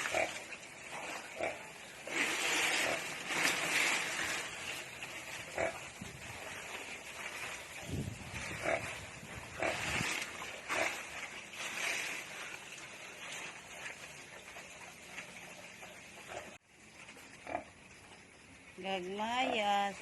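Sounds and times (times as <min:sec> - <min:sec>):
pigs grunting and squealing: 0:08.3 - 0:10.0.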